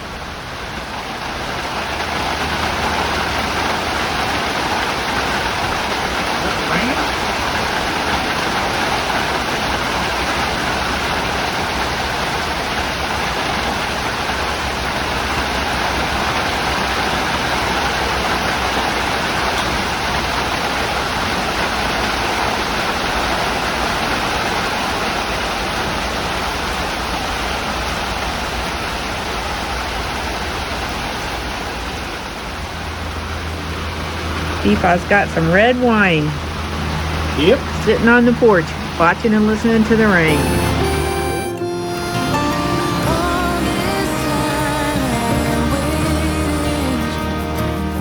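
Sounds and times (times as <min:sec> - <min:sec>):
heavy rain falling: 0:00.0 - 0:48.0.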